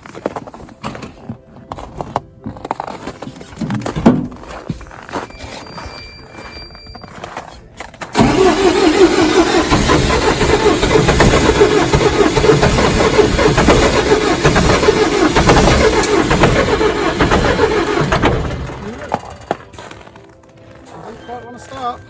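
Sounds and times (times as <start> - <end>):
starter cranking diesel engine: 8.1 - 19.8.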